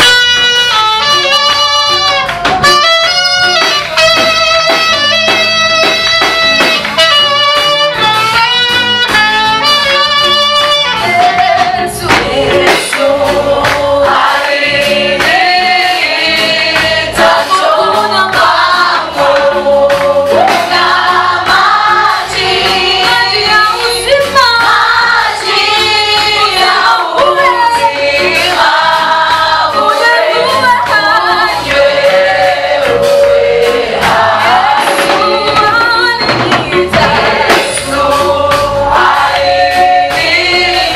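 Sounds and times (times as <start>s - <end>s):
band accompaniment: 0.0s - 40.9s
instrumental lead line: 0.0s - 40.9s
choir singing: 11.5s - 40.9s.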